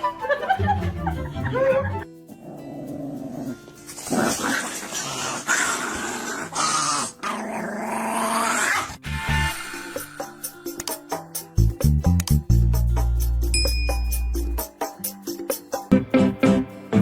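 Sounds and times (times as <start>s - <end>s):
dog growling: 2.4s - 9.0s.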